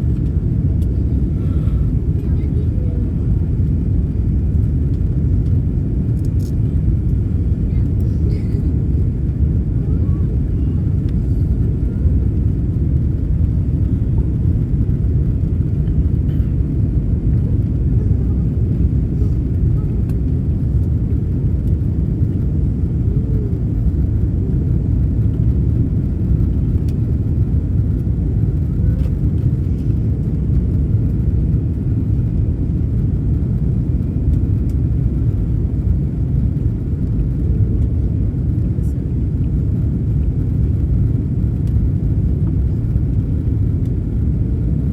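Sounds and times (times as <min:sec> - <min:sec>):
rushing airflow: 0:00.0 - 0:19.8
airliner engines rumbling in cabin: 0:00.0 - 0:44.9.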